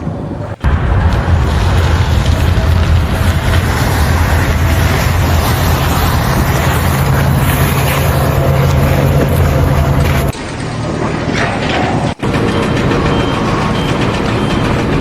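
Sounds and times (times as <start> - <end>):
noisy hiss: 0.0 - 11.0
large engine rumbling: 0.0 - 15.0.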